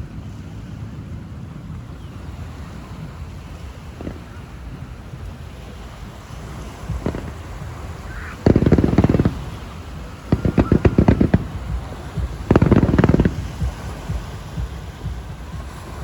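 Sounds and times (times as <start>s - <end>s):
fireworks bangs: 3.7s - 16.0s.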